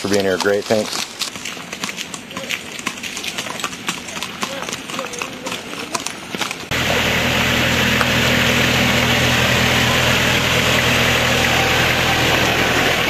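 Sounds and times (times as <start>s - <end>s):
vehicle engine idling: 4.8s - 13.0s.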